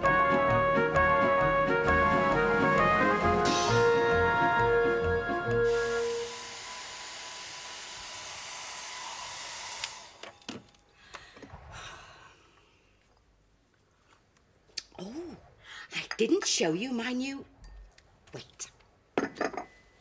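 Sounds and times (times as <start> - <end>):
hair dryer blowing: 5.4 - 10.1.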